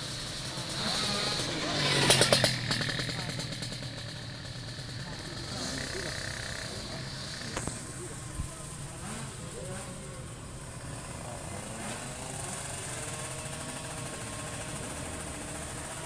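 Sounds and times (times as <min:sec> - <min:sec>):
two-stroke engine idling: 0:00.0 - 0:16.0.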